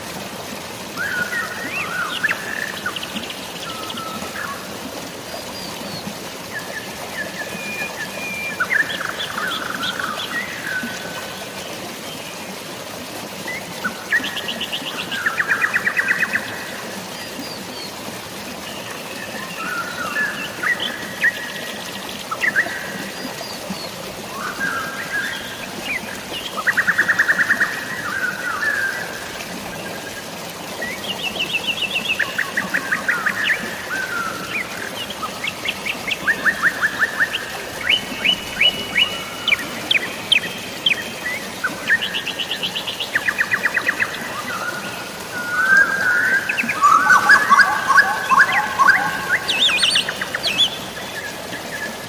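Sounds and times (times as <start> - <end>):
drizzling rain: 0.0 - 52.0
running water: 0.0 - 52.0
songbirds trilling and chirping: 18.7 - 52.0.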